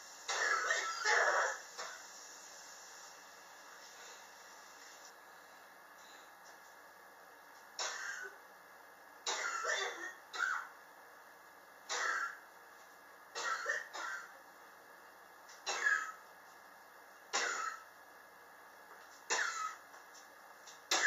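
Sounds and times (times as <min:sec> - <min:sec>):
person coughing: 0:00.3 - 0:01.5, 0:09.3 - 0:10.7, 0:13.4 - 0:14.3, 0:19.3 - 0:19.8.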